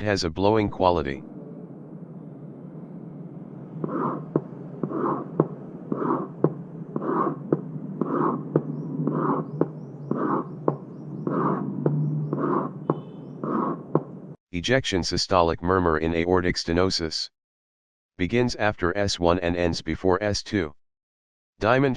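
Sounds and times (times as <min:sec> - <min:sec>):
heartbeat with blowing murmur: 0:03.8 - 0:14.2.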